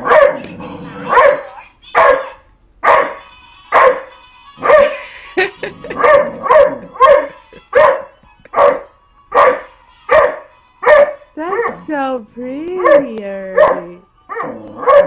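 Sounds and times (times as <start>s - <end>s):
puppy howling: 13.6s - 15.0s.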